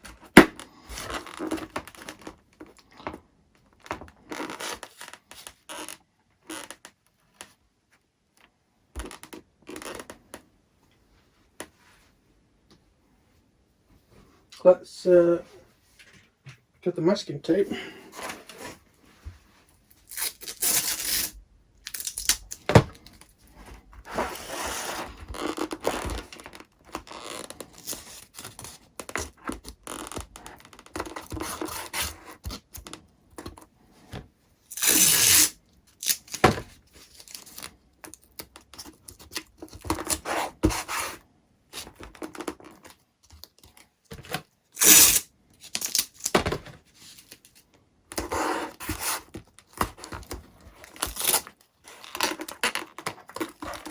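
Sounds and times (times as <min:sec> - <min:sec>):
masking tape ripping off roll: 0:20.1 - 0:22.7, 0:34.7 - 0:36.4, 0:44.8 - 0:46.4, 0:50.9 - 0:52.8
knocks and handling noise: 0:22.3 - 0:24.4, 0:46.1 - 0:51.2.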